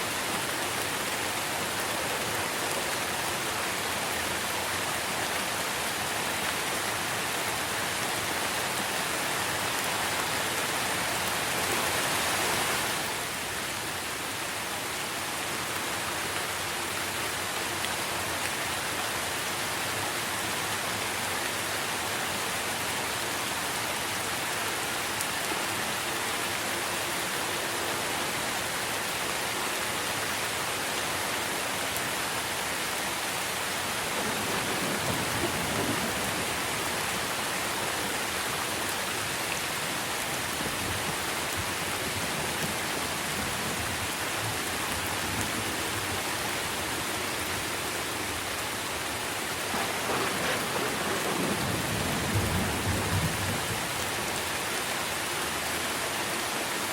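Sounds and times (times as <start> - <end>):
rain falling on leaves: 0.0 - 56.9
low thunder rumble: 34.1 - 37.3, 49.7 - 54.0.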